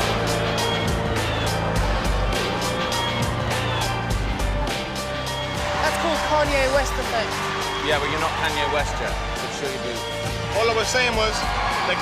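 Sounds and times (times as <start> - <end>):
background music with quick beat: 0.0 - 12.0.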